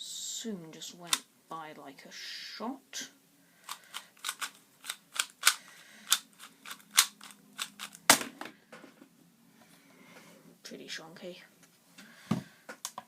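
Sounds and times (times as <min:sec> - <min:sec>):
puzzle cube clicking: 0:03.7 - 0:08.1.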